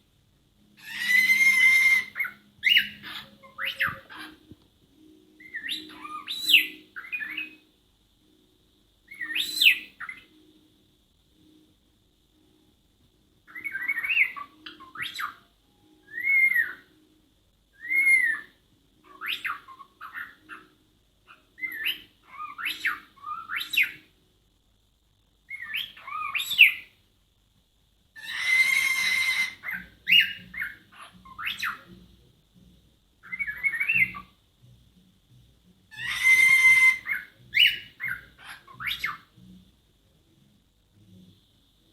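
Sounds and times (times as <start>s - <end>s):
cockatiel harsh screeches: 0.8s - 4.4s, 28.2s - 31.8s, 35.9s - 39.2s
cockatiel whistles and beeps: 0.8s - 4.4s, 5.0s - 7.6s, 9.1s - 10.4s, 13.5s - 17.0s, 17.8s - 20.7s, 28.2s - 31.9s, 33.2s - 34.4s.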